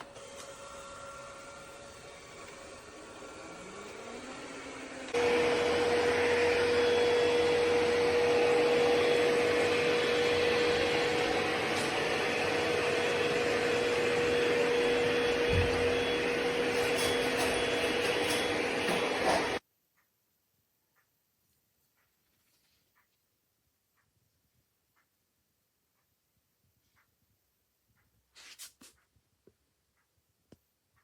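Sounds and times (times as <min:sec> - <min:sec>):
robot vacuum whirring: 0:00.0 - 0:19.6.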